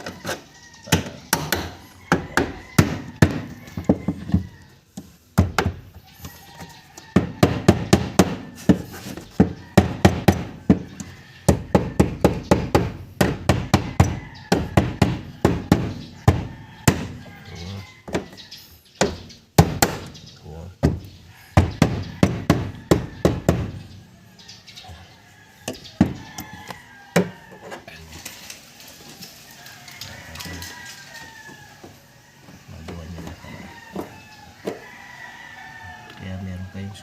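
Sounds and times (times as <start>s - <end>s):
hard knocks and taps: 20.8s - 23.8s.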